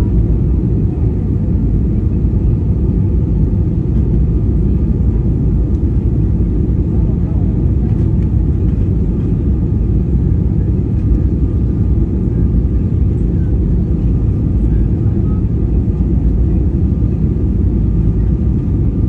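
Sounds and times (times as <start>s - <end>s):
airliner engines rumbling: 0.0s - 19.0s.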